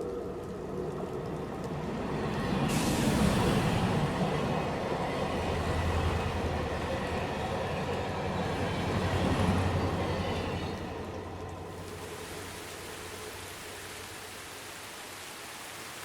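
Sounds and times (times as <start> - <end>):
train running past: 1.0 - 11.8.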